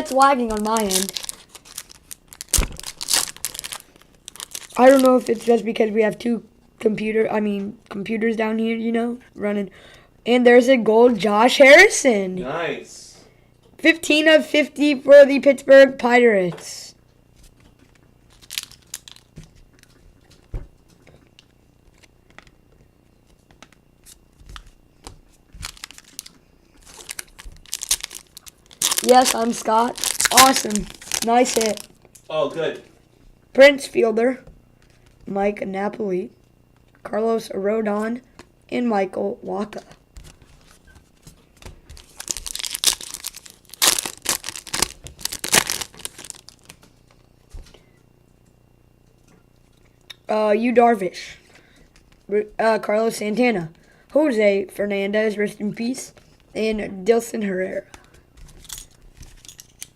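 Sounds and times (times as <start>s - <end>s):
cards being handled: 0.0s - 5.6s, 17.5s - 19.9s, 23.3s - 31.9s, 40.2s - 46.9s
wrappers tearing and crinkling: 0.0s - 5.6s, 18.3s - 19.3s, 25.6s - 31.9s, 41.9s - 46.8s.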